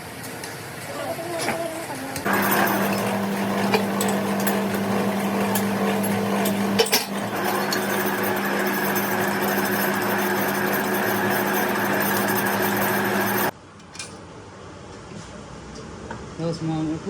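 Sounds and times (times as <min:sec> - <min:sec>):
power tool humming: 0:02.2 - 0:13.5.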